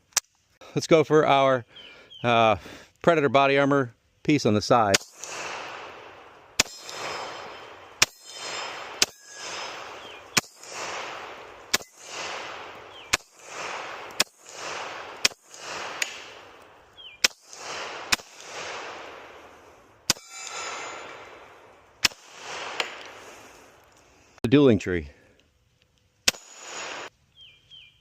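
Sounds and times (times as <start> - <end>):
pistol shots with echo: 4.9 - 23.2, 26.3 - 27.1.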